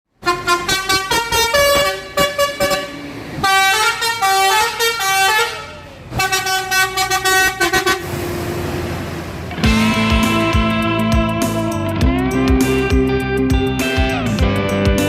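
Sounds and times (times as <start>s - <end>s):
musical bus horn tooting: 0.2s - 8.2s, 9.6s - 12.0s.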